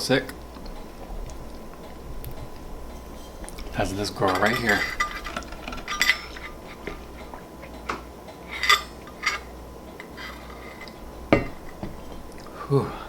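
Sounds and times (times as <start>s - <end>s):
tableware clinking: 2.4s - 12.3s.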